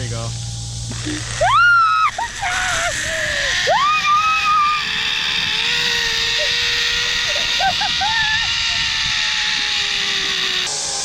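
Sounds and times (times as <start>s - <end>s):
zip line trolley whirring: 0.7s - 11.0s
person screaming: 1.1s - 8.9s.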